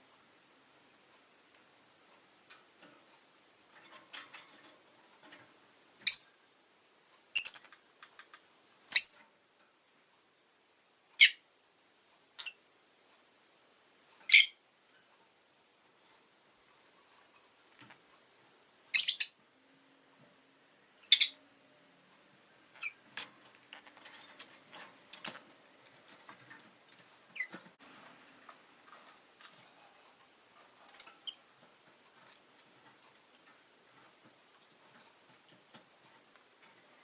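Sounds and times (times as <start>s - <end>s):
lovebirds chirping: 6.0s - 6.4s, 8.9s - 9.2s, 14.3s - 14.6s, 18.9s - 19.4s, 21.0s - 21.4s.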